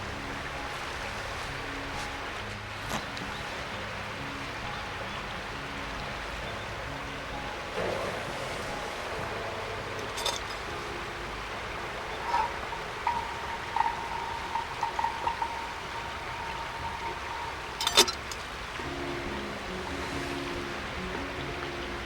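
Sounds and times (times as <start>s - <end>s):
thin steady tone: 3.2s - 22.0s
gas burner hissing: 6.2s - 22.0s
small knocks: 7.8s - 18.8s.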